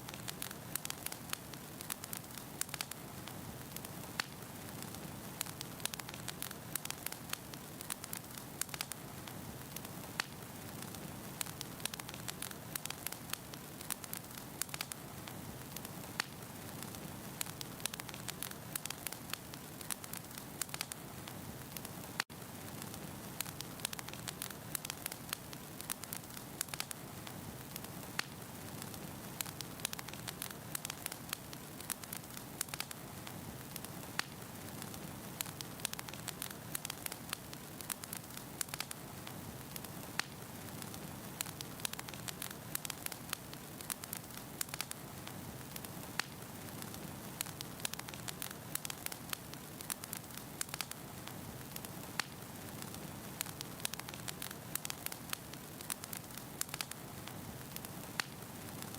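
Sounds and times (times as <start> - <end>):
fire crackling and popping: 0.0 - 58.9
soft rush of flames: 0.0 - 58.9.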